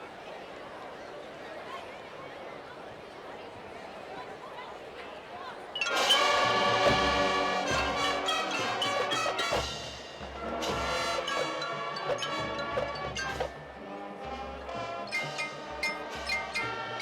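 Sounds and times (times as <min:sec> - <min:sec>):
brass and percussion music: 0:05.8 - 0:17.0.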